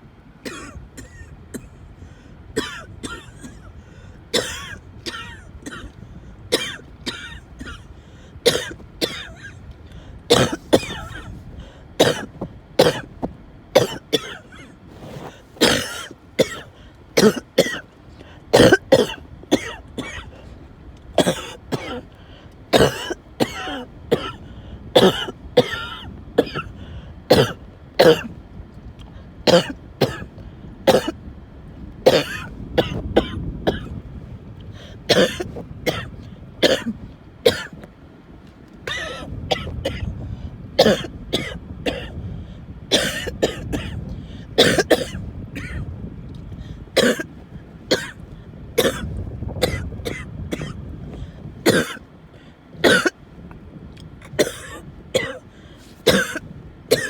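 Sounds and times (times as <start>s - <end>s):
person coughing harshly: 0.4s - 1.8s, 2.6s - 3.7s, 4.3s - 9.6s, 10.3s - 13.2s, 13.8s - 17.8s, 18.5s - 20.5s, 21.2s - 22.1s, 22.7s - 28.3s, 29.5s - 31.2s, 32.0s - 34.0s, 34.8s - 37.8s, 38.9s - 40.1s, 40.8s - 42.2s, 42.9s - 45.9s, 47.0s - 48.2s, 48.8s - 50.8s, 51.6s - 52.0s, 52.8s - 53.2s, 54.3s - 57.0s.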